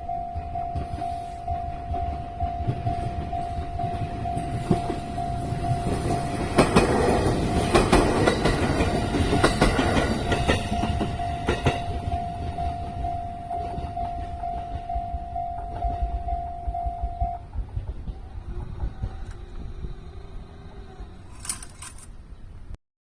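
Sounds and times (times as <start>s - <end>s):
level-crossing warning bell: 0.0s - 22.1s
train rumble: 0.0s - 22.7s
short clatter: 21.3s - 22.2s.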